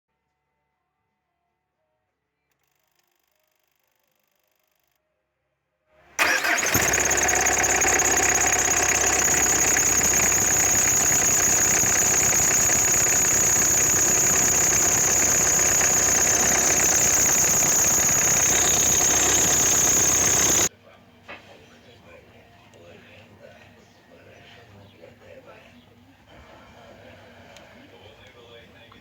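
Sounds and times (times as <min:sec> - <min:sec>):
diesel engine running: 0:06.2 - 0:20.7
high-pitched belt whistle: 0:06.2 - 0:20.7.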